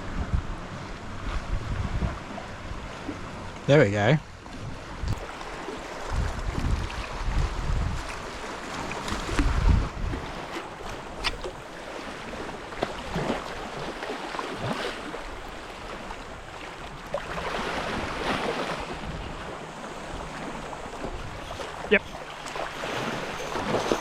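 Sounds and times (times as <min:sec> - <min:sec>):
wind gusting on microphone: 0:00.0 - 0:02.8, 0:04.6 - 0:14.0, 0:14.6 - 0:22.1
sea water washing on rocks: 0:05.0 - 0:24.0.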